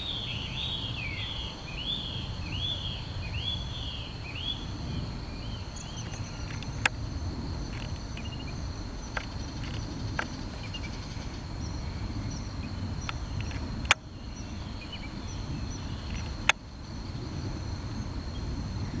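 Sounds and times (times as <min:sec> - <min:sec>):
insect trill: 0:00.0 - 0:19.0
sharp clicks: 0:06.0 - 0:07.0, 0:07.7 - 0:10.9, 0:13.0 - 0:14.1, 0:16.1 - 0:16.6.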